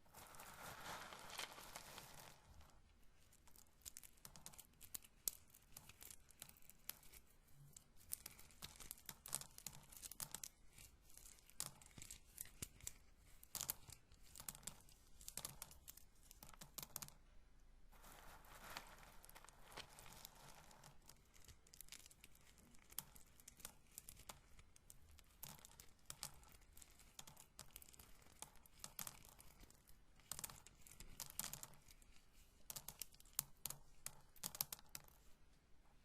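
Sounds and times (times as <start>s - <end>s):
corn kernels rubbing and crackling: 0.0s - 2.8s, 18.0s - 24.4s.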